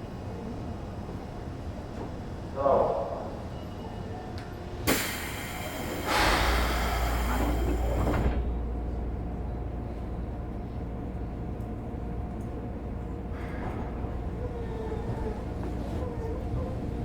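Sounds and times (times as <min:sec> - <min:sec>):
train car low hum: 0:00.0 - 0:17.0
door air hiss: 0:04.9 - 0:08.3.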